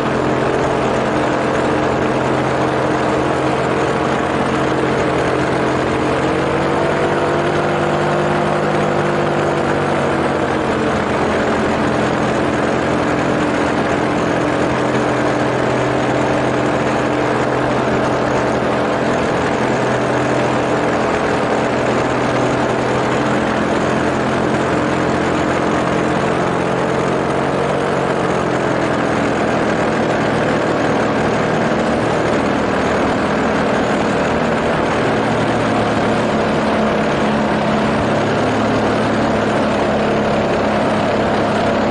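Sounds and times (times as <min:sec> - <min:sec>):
propeller engine running: 0:00.0 - 0:41.9.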